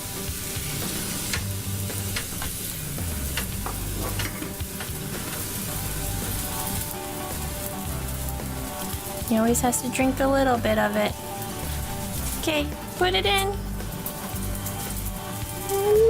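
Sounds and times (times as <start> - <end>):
food sizzling in a hot pot: 0.0 - 16.0.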